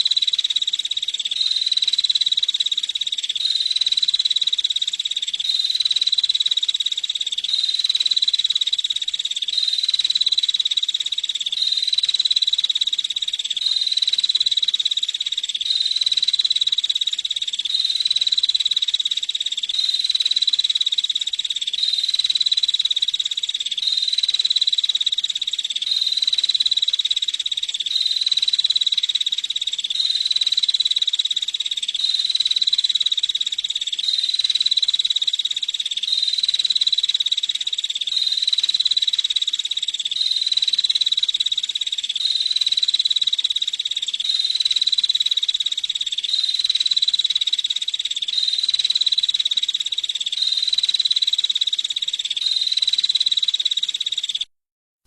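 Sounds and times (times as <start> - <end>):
bird buzzing trill call: 42.2 - 54.5.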